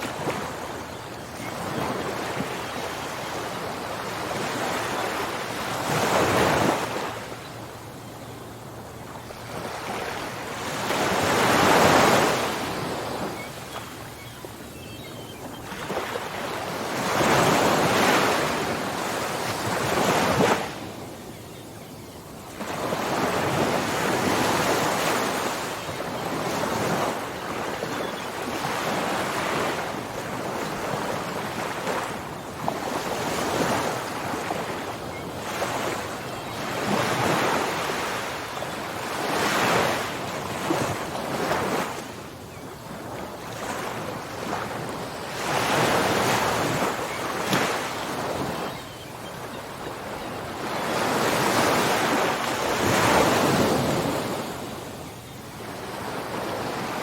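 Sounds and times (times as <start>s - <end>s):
ocean waves breaking: 8.7s - 14.6s.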